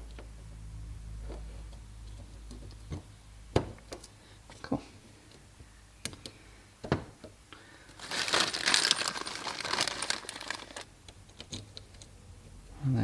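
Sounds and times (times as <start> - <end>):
tools clinking and rattling: 8.0 - 10.8.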